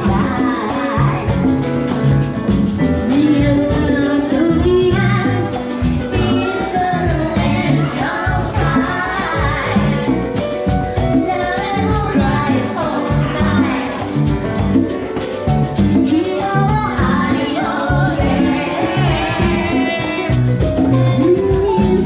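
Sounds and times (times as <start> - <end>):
person singing: 0.0 - 2.1, 3.0 - 22.0
salsa band playing: 0.0 - 22.0.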